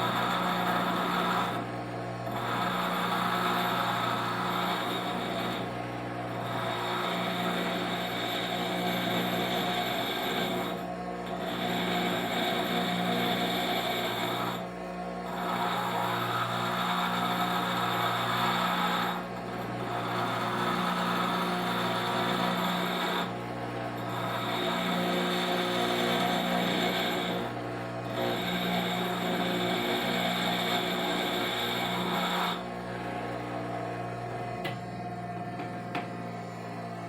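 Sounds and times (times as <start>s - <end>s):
grinder grinding metal: 0.0s - 5.7s, 6.3s - 37.0s.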